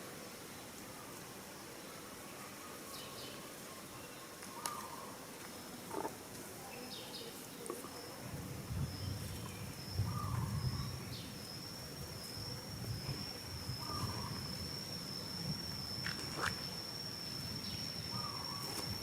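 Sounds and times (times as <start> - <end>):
high-pitched insect whine: 0.0 - 19.0.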